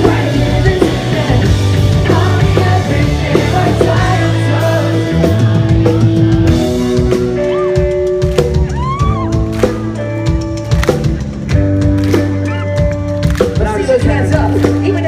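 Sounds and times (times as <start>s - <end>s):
person singing: 0.0s - 6.8s
drum kit: 0.0s - 15.0s
electric guitars and bass: 0.0s - 15.0s.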